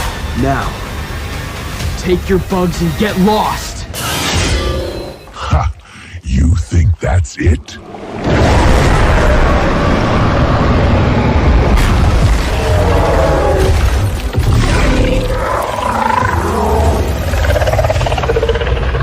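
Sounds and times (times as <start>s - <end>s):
deep rumbling and roaring: 7.8s - 19.0s.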